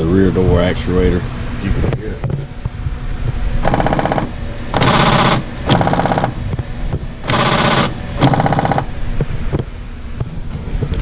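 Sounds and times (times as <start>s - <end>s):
door lock actuator buzzing: 3.6s - 6.4s, 7.2s - 8.9s.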